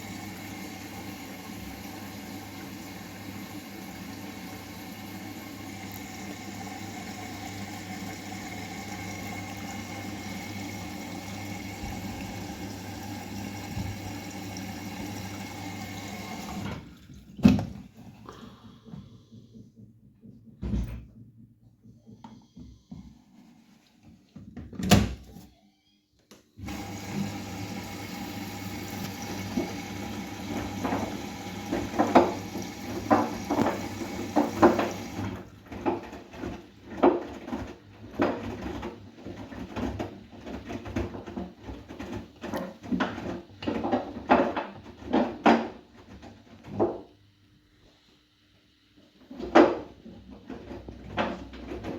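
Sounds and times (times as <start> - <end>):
laundry tumbling in drum: 30.5 - 47.1.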